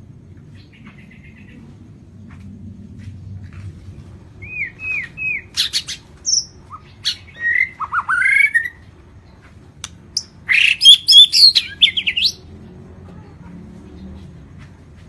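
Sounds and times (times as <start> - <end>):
bird singing whistles and warble: 4.4 - 8.8, 10.2 - 12.4.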